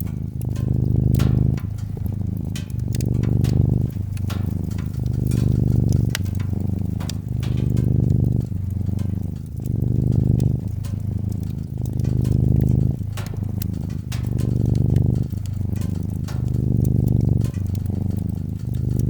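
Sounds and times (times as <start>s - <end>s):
cat purring: 0.0s - 19.0s
wood fire crackling: 0.0s - 19.0s.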